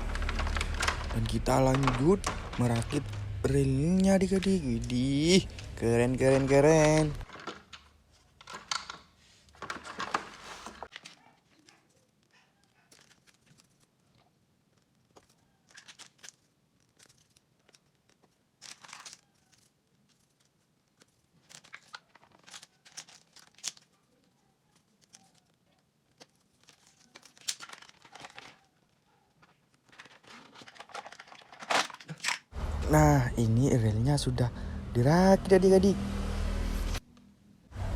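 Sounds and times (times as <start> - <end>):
rustling and crinkling: 0.0 - 32.5
toy train track pieces clicking: 6.2 - 10.3, 29.9 - 32.4.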